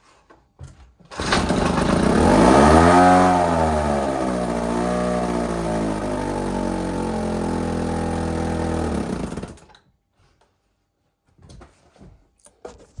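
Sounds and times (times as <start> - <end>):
outboard motor running: 1.2 - 9.6.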